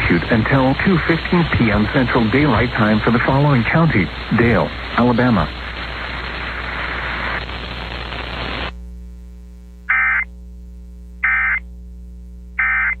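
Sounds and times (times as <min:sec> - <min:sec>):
radio static hiss: 0:00.0 - 0:13.0
digital data tone bursts: 0:09.9 - 0:10.3, 0:11.2 - 0:11.6, 0:12.6 - 0:13.0.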